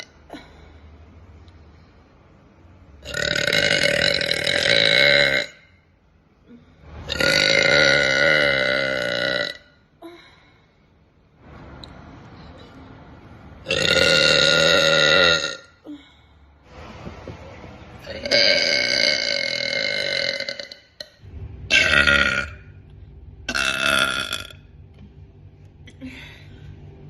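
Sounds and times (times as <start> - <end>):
woman belching: 3.1 - 5.6, 7.1 - 9.7, 13.7 - 15.7, 18.0 - 22.7, 23.5 - 24.6.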